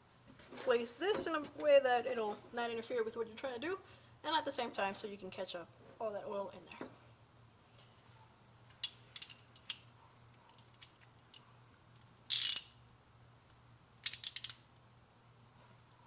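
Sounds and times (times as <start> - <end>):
socket wrench ratchet clicking: 12.3 - 12.8, 14.0 - 14.7
metallic clicks: 14.0 - 14.7.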